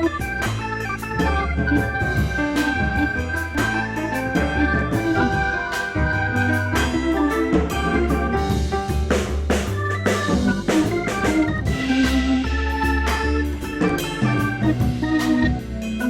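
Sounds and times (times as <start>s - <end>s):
bass and drums beat: 0.0s - 16.0s
electric organ: 0.0s - 16.0s.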